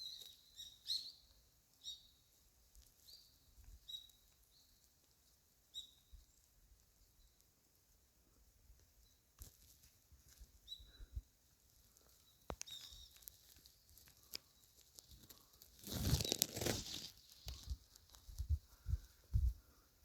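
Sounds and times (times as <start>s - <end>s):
rustling and crackling: 8.8s - 11.0s, 11.6s - 19.6s.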